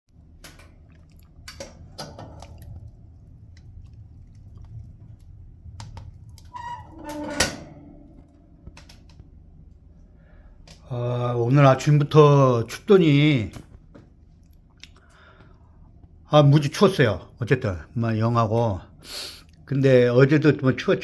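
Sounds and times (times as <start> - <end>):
low hum: 0.1 - 16.3
short creak: 6.4 - 8.4.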